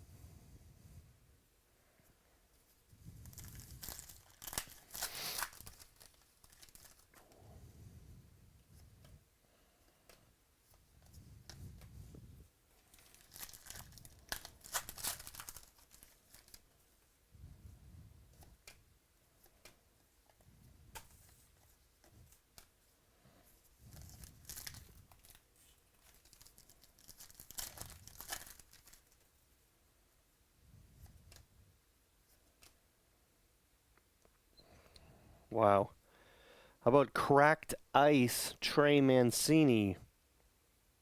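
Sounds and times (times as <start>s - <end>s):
wrappers tearing and crinkling: 3.2s - 7.2s, 12.8s - 16.7s, 23.9s - 29.2s
cards being handled: 3.2s - 7.4s, 12.7s - 16.8s, 19.4s - 22.8s, 23.6s - 29.2s.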